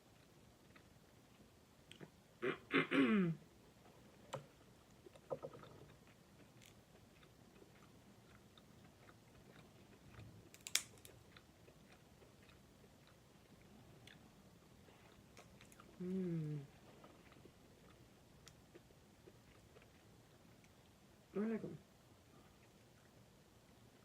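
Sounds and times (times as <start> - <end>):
soft chewing with cracks: 0.0 - 2.2, 3.8 - 21.2, 22.2 - 23.4
person humming mmm: 16.0 - 16.7, 21.4 - 21.8.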